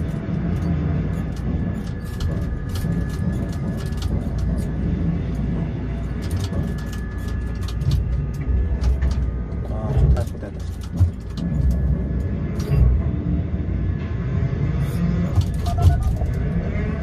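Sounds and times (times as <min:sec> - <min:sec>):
clicks and rattles: 0:00.0 - 0:04.8, 0:06.0 - 0:11.9, 0:15.3 - 0:16.4
low wind rumble: 0:00.0 - 0:17.0.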